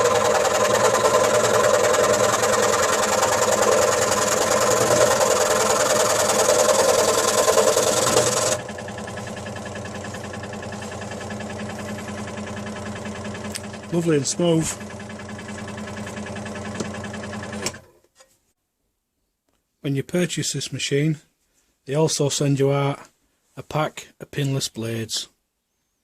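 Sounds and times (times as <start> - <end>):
scroll saw cutting wood: 0.0 - 17.9.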